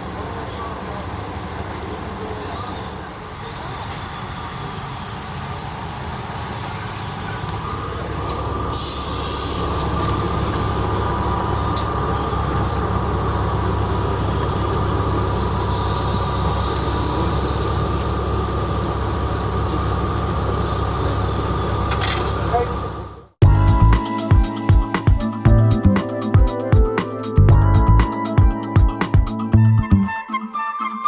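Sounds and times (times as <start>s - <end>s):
short hiss: 6.3s - 6.8s, 8.7s - 9.9s
vehicle rumble from inside cabin: 6.7s - 23.8s.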